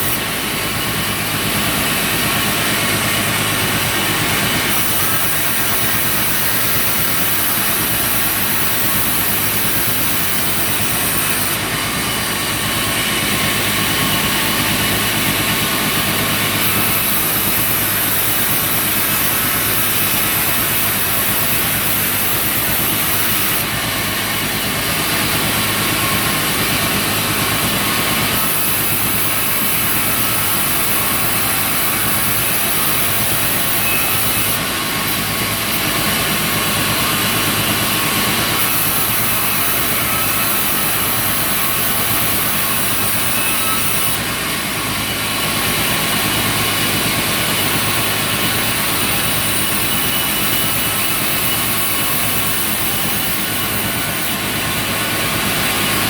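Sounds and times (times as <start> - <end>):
sawmill machinery running: 0.0 - 56.0.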